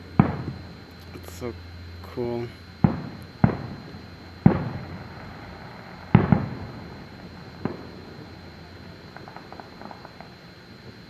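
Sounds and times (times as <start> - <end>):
fireworks exploding: 0.0 - 1.6, 2.4 - 11.0
small crackling pops: 2.8 - 11.0.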